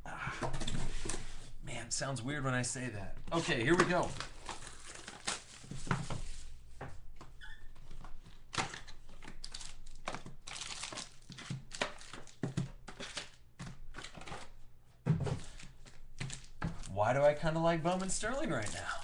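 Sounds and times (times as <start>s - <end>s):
wrapper tearing and crinkling: 4.0s - 5.7s, 8.7s - 13.4s, 18.4s - 19.0s.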